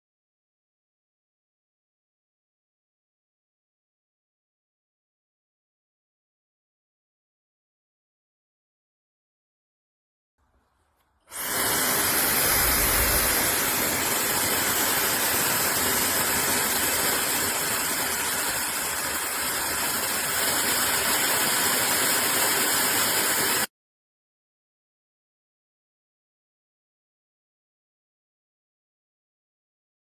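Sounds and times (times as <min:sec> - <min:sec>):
hair dryer blowing: 0:11.3 - 0:23.7.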